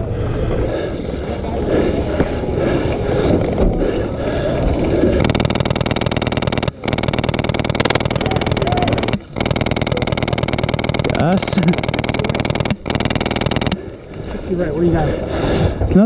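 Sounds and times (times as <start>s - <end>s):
airsoft machine gun firing: 5.1s - 14.0s.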